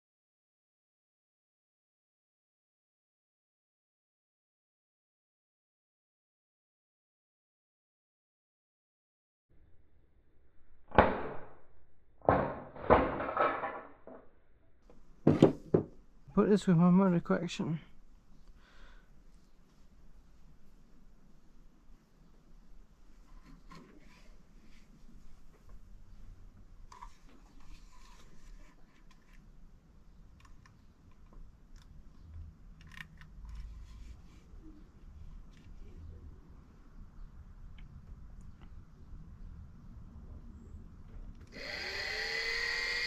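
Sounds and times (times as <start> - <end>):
hard objects knocking and clattering: 12.3 - 14.2, 15.2 - 16.0.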